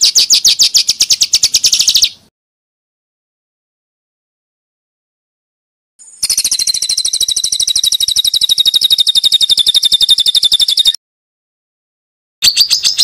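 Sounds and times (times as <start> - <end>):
songbird high rapid trill: 0.0 - 2.3, 6.0 - 11.0.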